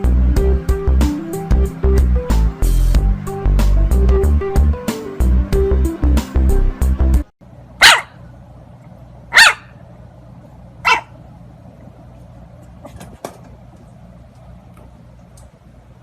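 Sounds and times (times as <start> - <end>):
dog barking: 7.8 - 8.2, 9.3 - 9.8, 10.8 - 11.2.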